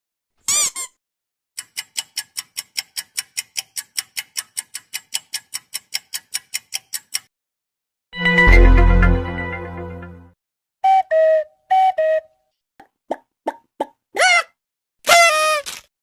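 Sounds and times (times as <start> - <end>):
clock ticking rapidly: 1.6 - 7.3.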